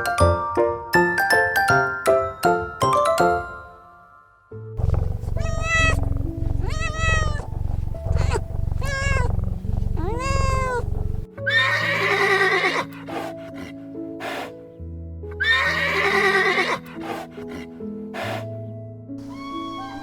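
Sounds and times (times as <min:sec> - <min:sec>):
rough animal call: 0:04.8 - 0:11.3
cat meowing: 0:04.8 - 0:12.8, 0:19.2 - 0:20.0
background music: 0:10.8 - 0:20.0.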